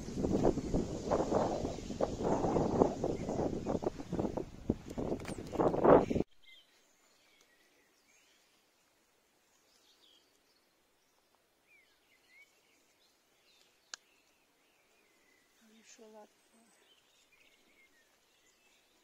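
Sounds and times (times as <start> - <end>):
faint birdsong chirps: 5.3 - 19.0.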